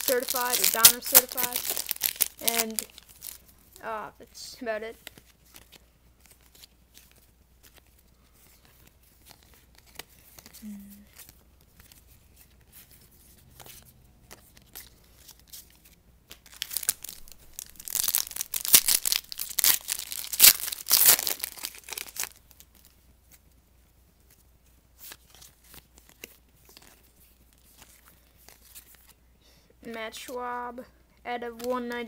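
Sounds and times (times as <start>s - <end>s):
plastic wrapper tearing and crinkling: 0.0s - 3.6s, 13.6s - 23.0s.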